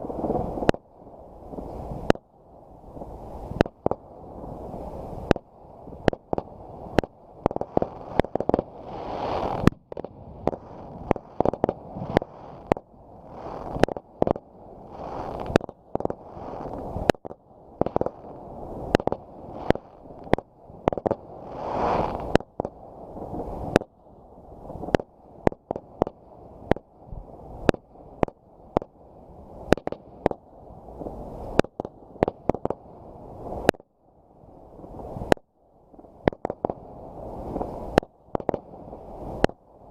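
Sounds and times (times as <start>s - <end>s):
rushing noise of fireworks: 0.0s - 33.9s, 34.6s - 39.9s
fireworks banging: 6.0s - 22.8s.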